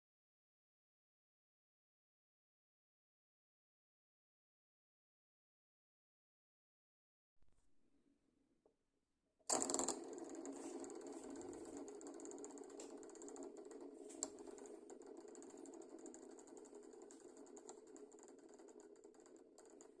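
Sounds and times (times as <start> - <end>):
spinning top rattling whir: 9.5 - 20.0.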